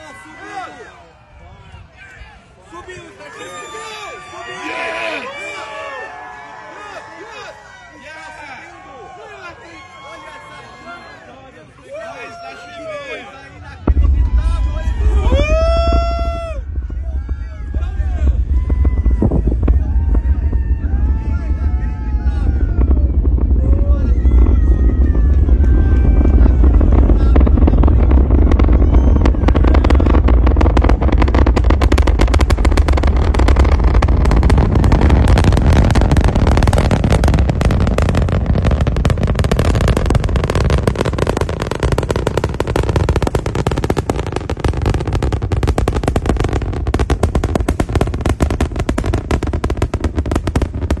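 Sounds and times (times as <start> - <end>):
rocket engines rumbling and crackling: 11.2 - 51.0.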